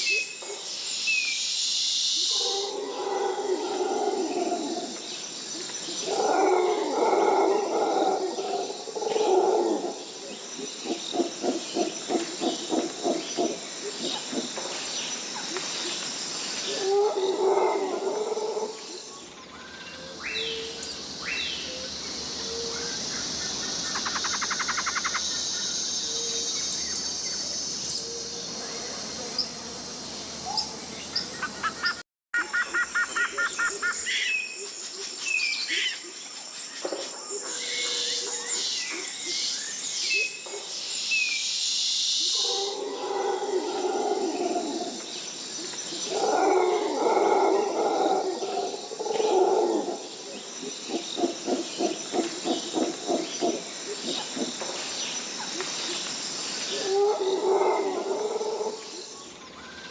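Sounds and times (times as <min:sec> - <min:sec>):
high-pitched insect drone: 0:19.4 - 0:32.0.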